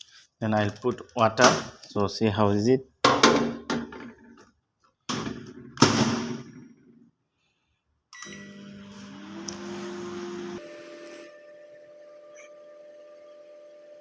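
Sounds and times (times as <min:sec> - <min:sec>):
microwave oven humming: 0:08.2 - 0:14.0.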